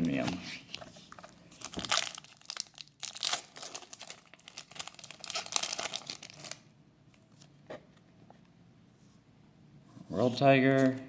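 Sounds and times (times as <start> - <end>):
foil wrapper tearing and crinkling: 1.2 - 6.7.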